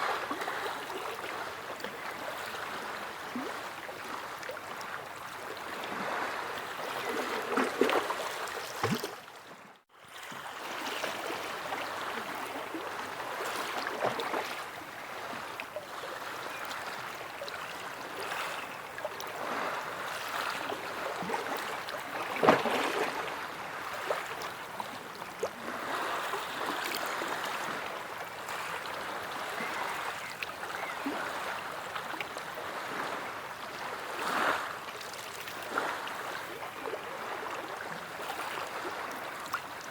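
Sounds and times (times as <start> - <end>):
water splashes: 5.2 - 9.6, 19.0 - 27.8.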